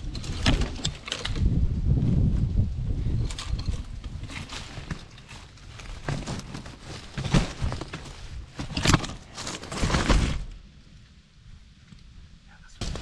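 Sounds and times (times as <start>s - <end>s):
wind buffeting microphone: 0.0s - 5.0s
handling rustling and knocks: 3.2s - 10.5s.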